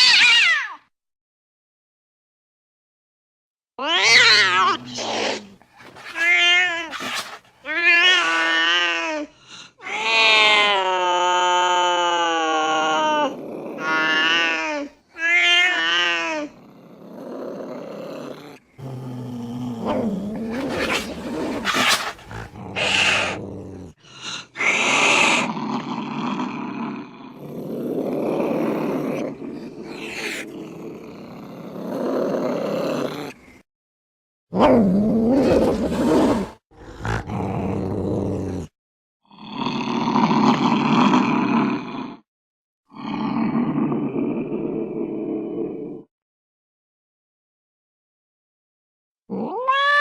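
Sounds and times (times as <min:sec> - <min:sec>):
cats yowling: 0:00.0 - 0:00.8, 0:03.8 - 0:09.0, 0:09.8 - 0:16.6, 0:49.4 - 0:50.0
cats growling: 0:03.8 - 0:09.0, 0:09.6 - 0:33.6, 0:34.6 - 0:42.2, 0:49.3 - 0:50.0
cat hissing: 0:04.0 - 0:07.8, 0:19.8 - 0:25.6, 0:29.4 - 0:30.7.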